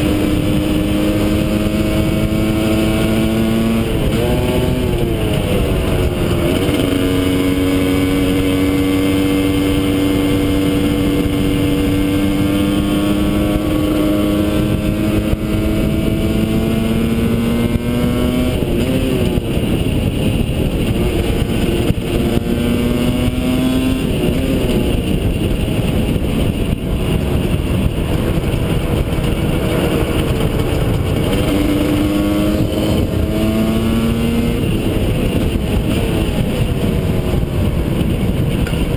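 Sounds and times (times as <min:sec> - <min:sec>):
rushing wind noise: 0:00.0 - 0:38.9
two-stroke motorcycle engine: 0:00.0 - 0:38.9.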